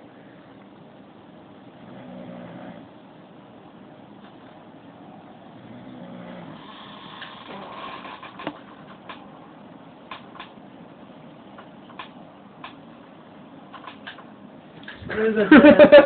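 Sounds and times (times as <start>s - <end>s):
man snoring: 1.8s - 2.8s, 5.6s - 7.8s.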